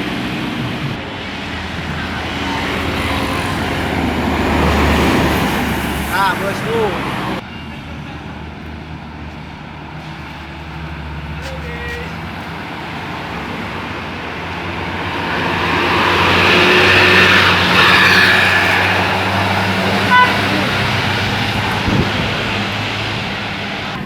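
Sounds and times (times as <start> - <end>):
bus driving past: 0.0 - 24.0
bus horn toot: 2.0 - 8.2, 11.3 - 12.3, 15.8 - 22.6.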